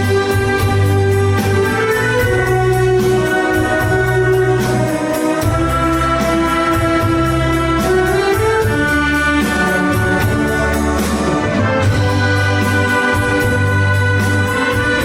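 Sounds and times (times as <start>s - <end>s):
brass and woodwinds melody: 0.0s - 15.0s
wind orchestra playing pop: 0.0s - 15.0s.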